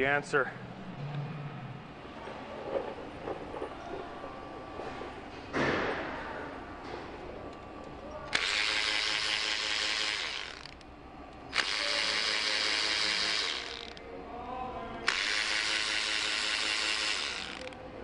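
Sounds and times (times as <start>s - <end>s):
handheld power tool running: 8.3s - 10.8s, 11.5s - 14.0s, 15.1s - 17.8s.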